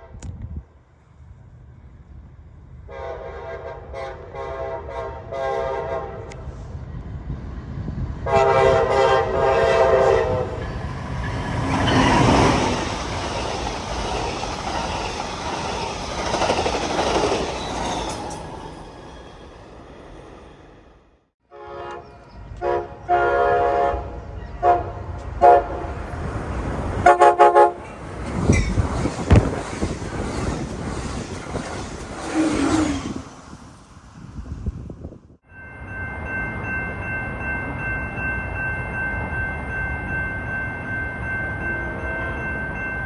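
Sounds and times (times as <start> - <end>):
train rumble and wheel clatter: 0.0 - 21.1, 21.8 - 43.0
train air horn blasts: 2.9 - 6.4, 8.3 - 10.7, 21.4 - 26.1, 27.0 - 27.9.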